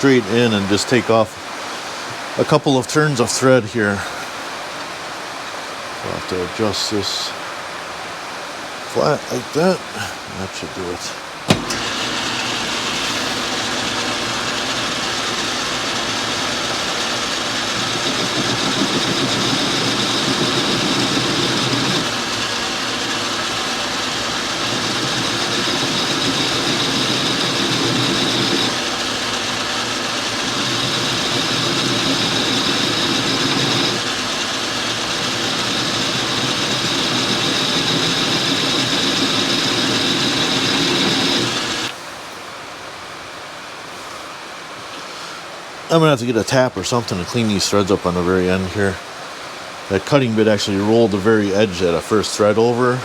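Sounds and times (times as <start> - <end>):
metal lathe humming: 11.1 - 42.0
high-pitched cutting whine: 11.5 - 42.0.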